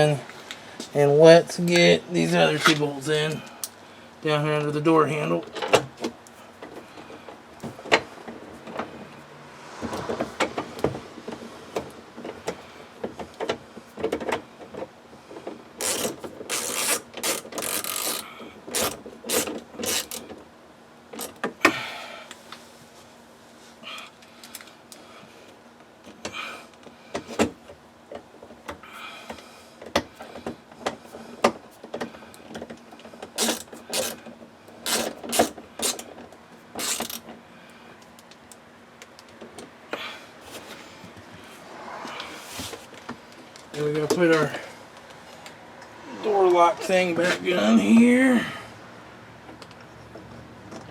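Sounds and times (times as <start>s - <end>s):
socket ratchet clicking: 33.4s - 34.2s, 34.8s - 36.0s, 36.8s - 37.2s.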